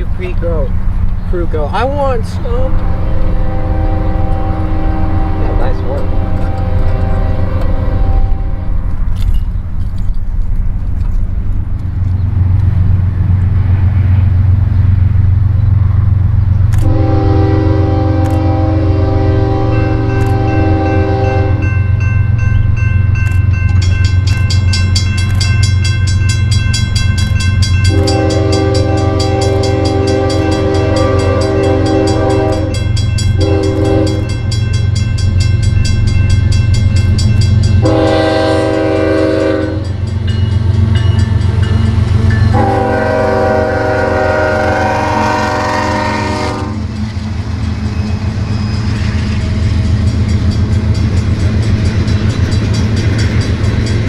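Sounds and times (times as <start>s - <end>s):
locomotive engine rumble: 0.0s - 54.0s
locomotive air horn blasts: 2.7s - 8.9s, 16.8s - 21.8s, 27.8s - 34.6s, 37.8s - 40.0s, 42.5s - 46.9s
train wheels clacking on rails: 5.4s - 43.5s, 46.1s - 54.0s.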